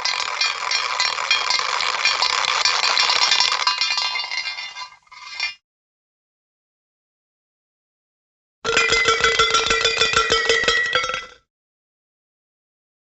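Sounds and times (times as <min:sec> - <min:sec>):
small objects clinking and jingling: 0:00.0 - 0:05.6.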